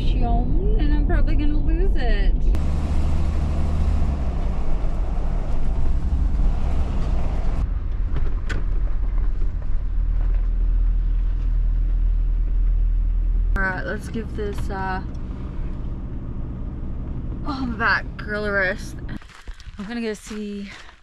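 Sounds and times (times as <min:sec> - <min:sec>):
engine rumble inside vehicle: 0:00.0 - 0:19.2
road noise hiss: 0:02.6 - 0:07.8.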